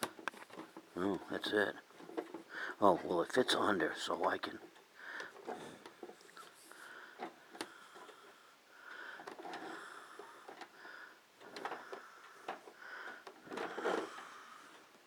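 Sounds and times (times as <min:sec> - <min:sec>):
cables and plastic parts handled: 0:00.0 - 0:08.4, 0:09.2 - 0:10.8, 0:11.4 - 0:15.0
soft breathing: 0:02.3 - 0:03.0, 0:05.0 - 0:15.0.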